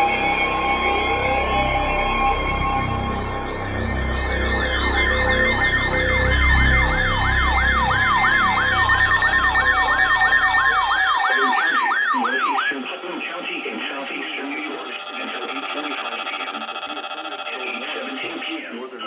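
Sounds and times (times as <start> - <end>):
deep low drone: 0.0 - 11.0
dark music: 0.0 - 15.1
electronic siren wailing: 0.0 - 18.7.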